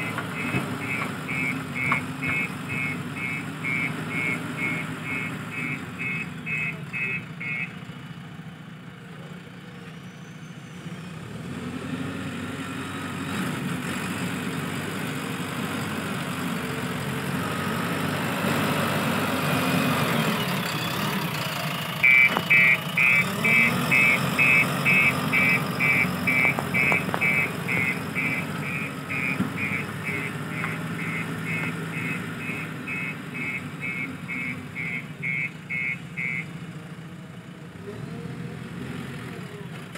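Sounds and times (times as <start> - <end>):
reversing alarm beeping: 0.0 - 7.7, 22.0 - 36.5
diesel engine running: 0.0 - 39.9.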